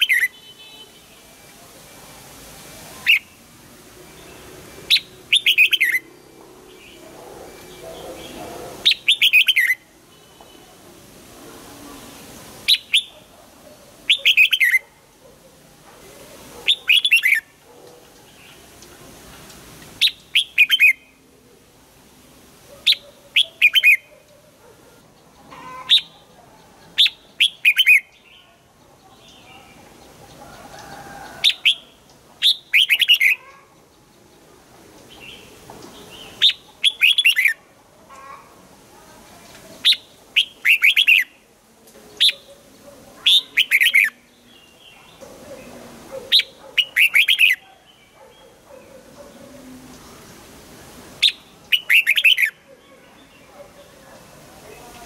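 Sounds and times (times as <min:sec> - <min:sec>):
bird singing whistled phrases: 0:04.9 - 0:06.0, 0:08.9 - 0:09.8, 0:16.7 - 0:17.4, 0:32.4 - 0:33.4, 0:36.4 - 0:37.6, 0:39.8 - 0:41.3, 0:46.3 - 0:47.6, 0:51.2 - 0:52.6.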